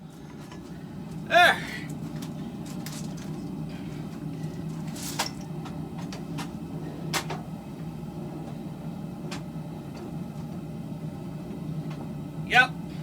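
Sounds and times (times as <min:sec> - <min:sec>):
gas forge roaring: 0:00.0 - 0:13.0.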